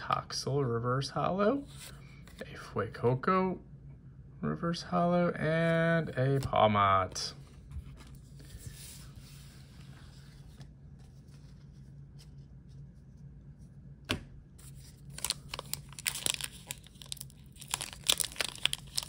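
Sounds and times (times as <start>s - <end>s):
faint low hum: 0.0s - 19.0s
foil wrapper crinkling: 14.8s - 19.0s.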